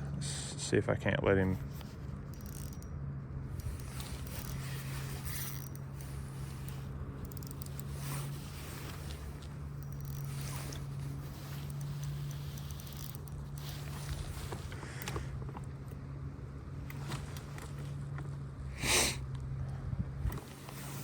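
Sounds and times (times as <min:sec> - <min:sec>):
low hum: 0:00.0 - 0:21.0
fishing reel line rasping: 0:01.8 - 0:02.9, 0:03.5 - 0:14.4.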